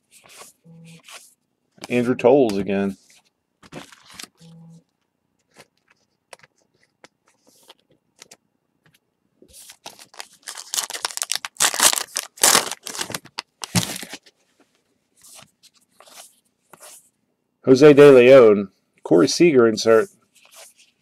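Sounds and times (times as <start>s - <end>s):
card pack wrapper tearing: 9.7s - 14.1s.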